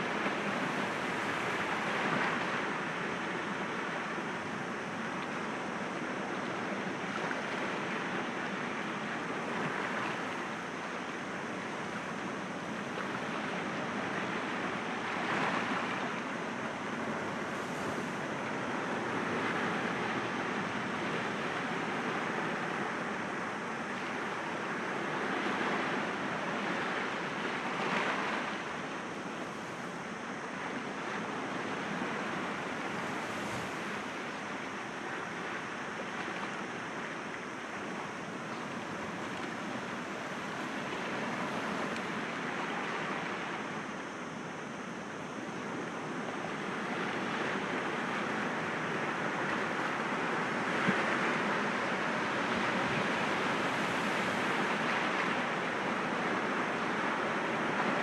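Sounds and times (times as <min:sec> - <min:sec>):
waves breaking against rocks: 0:31.7 - 0:34.7, 0:38.6 - 0:43.0, 0:52.3 - 0:55.4.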